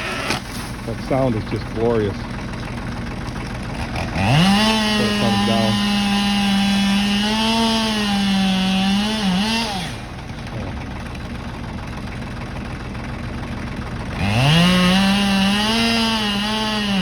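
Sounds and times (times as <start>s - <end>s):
chainsaw cutting at full throttle: 0.0s - 17.0s.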